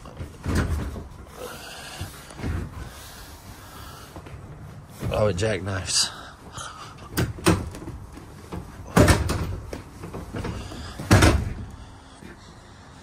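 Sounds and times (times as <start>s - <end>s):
sofa bed thumps: 9.0s - 11.7s.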